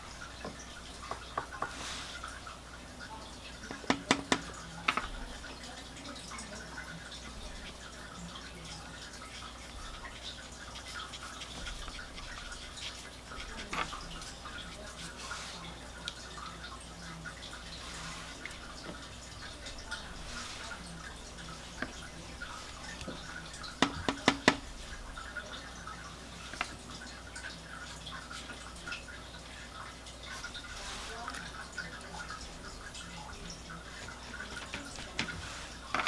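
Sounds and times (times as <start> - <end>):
brush scrubbing on paper: 1.6 - 2.4, 9.2 - 16.0, 17.3 - 27.0, 30.2 - 33.2, 33.8 - 36.0
sharp taps: 3.7 - 5.0, 23.8 - 24.6.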